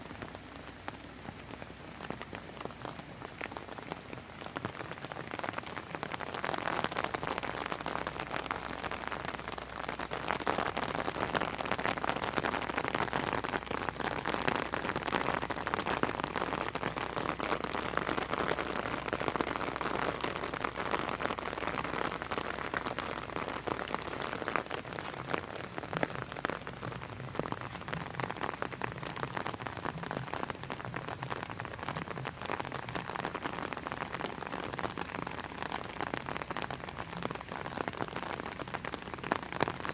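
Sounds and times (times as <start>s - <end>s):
rain pattering on foliage: 0.0s - 39.9s.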